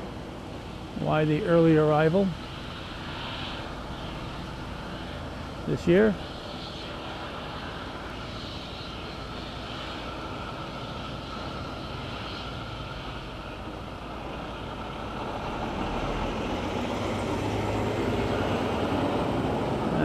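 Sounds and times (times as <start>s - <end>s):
farm machinery drone: 0.0s - 20.0s
truck engine approaching: 9.0s - 20.0s.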